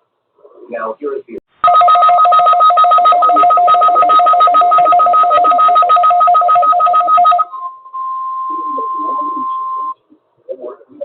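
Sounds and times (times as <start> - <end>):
steady single warning tone: 1.6 - 10.0
two-pitch pulsing electronic signal: 1.6 - 10.0.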